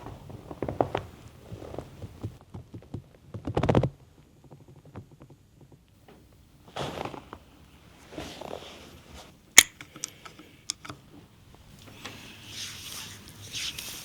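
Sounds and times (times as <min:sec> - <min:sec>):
soft rubbing swishes: 0:06.7 - 0:09.5, 0:12.0 - 0:14.0
sharp clicks: 0:09.6 - 0:11.0.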